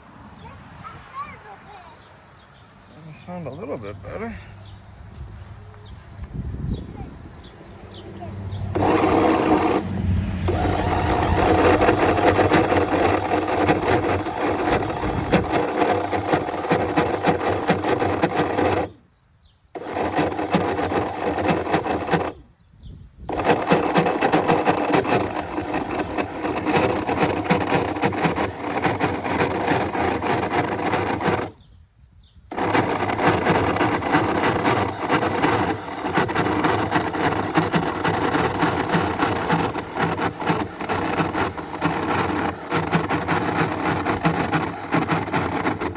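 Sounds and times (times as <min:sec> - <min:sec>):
electric trim pump running: 0:08.0 - 0:19.0, 0:19.8 - 0:22.5, 0:23.3 - 0:31.6, 0:32.5 - 0:45.9.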